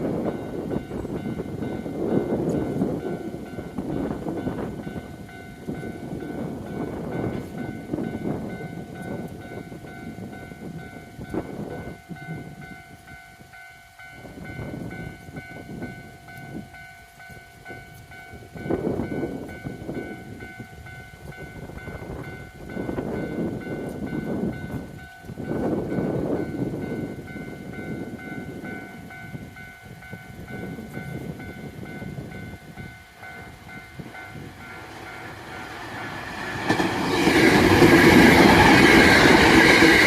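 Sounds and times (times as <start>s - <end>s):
crossing warning bell ringing: 0.0s - 40.0s
train rumbling past: 0.0s - 40.0s.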